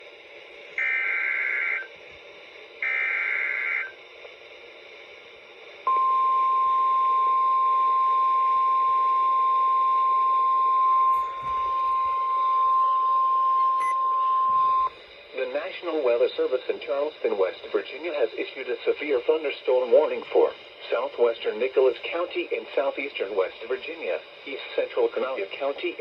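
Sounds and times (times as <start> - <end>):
radio hiss: 0.0 - 6.0, 10.9 - 13.8, 14.5 - 26.0
screechy digital data bursts: 0.8 - 1.9, 2.8 - 4.0
steady warning alarm tone: 0.8 - 2.0, 2.8 - 4.0, 5.9 - 15.0.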